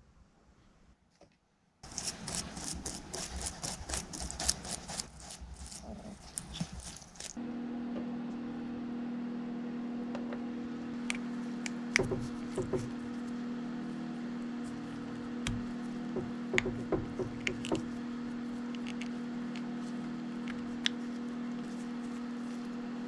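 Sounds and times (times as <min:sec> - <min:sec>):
small electric motor humming: 0:01.8 - 0:07.4.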